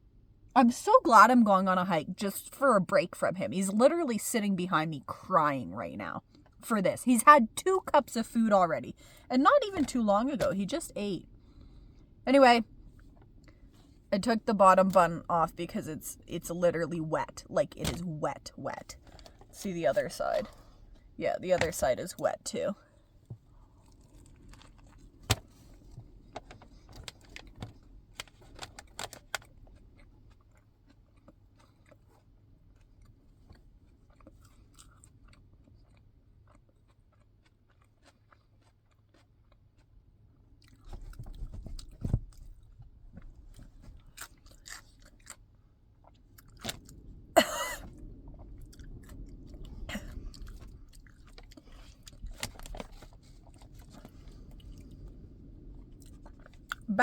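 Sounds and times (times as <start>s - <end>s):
person chewing a sandwich: 22.8s - 56.9s.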